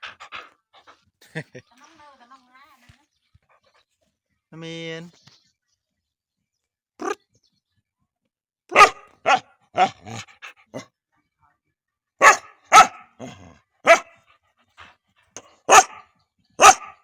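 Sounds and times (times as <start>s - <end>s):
dog barking: 8.7s - 10.8s, 12.2s - 14.2s, 15.6s - 17.0s.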